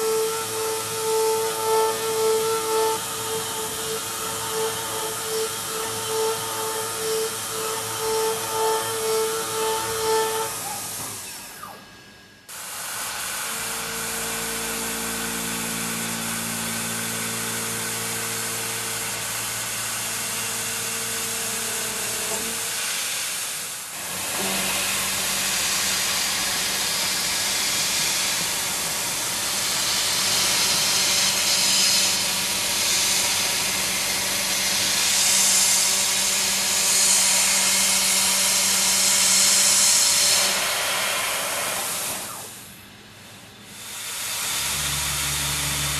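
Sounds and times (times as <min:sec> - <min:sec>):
milling machine cutting metal: 0:00.0 - 0:11.8, 0:12.5 - 0:42.7, 0:43.7 - 0:45.9.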